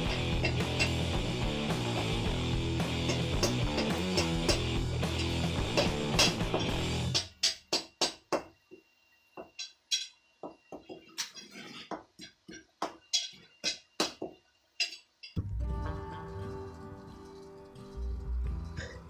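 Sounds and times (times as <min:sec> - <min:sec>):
hammer striking steel on anvil: 0:00.0 - 0:01.1, 0:02.8 - 0:08.4
background music: 0:00.0 - 0:07.2, 0:15.4 - 0:19.0.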